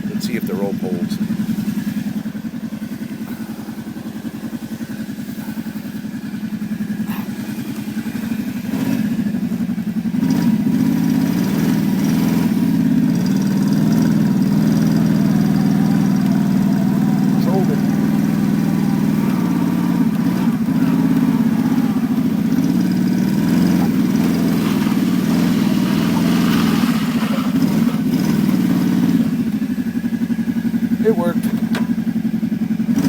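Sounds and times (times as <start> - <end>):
vehicle engine running: 0.0 - 33.0.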